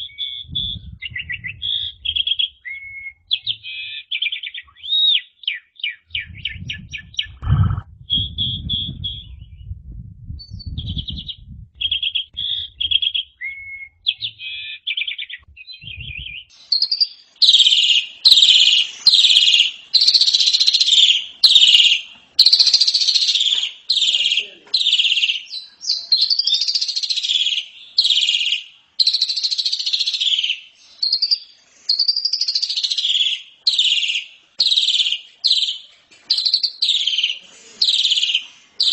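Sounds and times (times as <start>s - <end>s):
low rumbling noise: 0.0s - 2.7s, 6.1s - 13.2s, 15.5s - 16.5s
harsh rasping bird calls: 0.0s - 9.3s, 11.8s - 38.9s
bird chattering and trilling: 0.0s - 9.7s, 10.4s - 38.9s.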